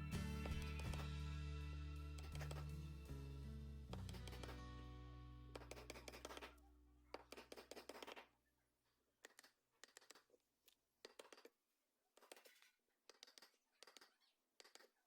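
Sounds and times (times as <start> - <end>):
background music: 0.0 - 6.5
hand tool scratching wood: 2.2 - 2.8, 3.9 - 4.7, 5.5 - 8.3.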